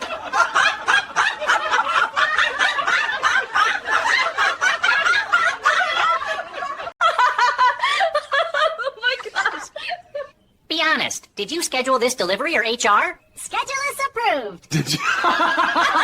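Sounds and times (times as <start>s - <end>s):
people laughing: 0.0s - 10.4s, 14.7s - 16.0s.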